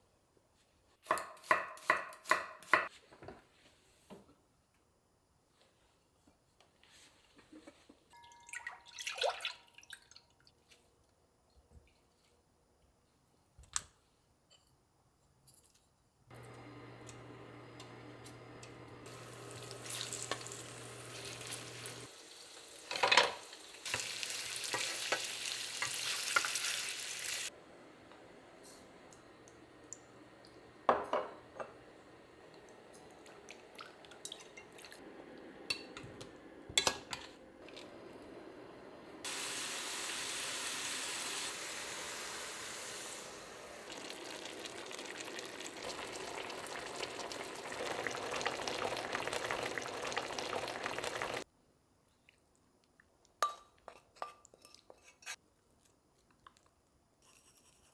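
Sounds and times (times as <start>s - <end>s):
food sizzling in a frying pan: 18.4s - 27.5s, 37.8s - 51.4s.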